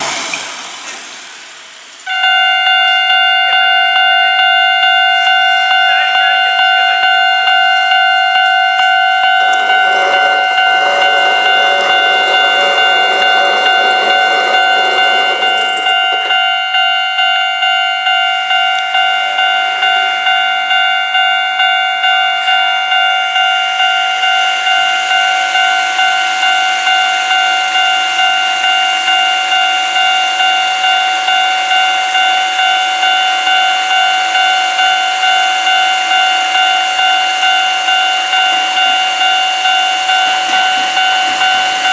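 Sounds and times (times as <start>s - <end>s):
train noise hiss: 0.0s - 2.1s, 8.9s - 16.8s
level crossing warning bell: 2.1s - 41.9s
passing rumble: 9.2s - 17.1s.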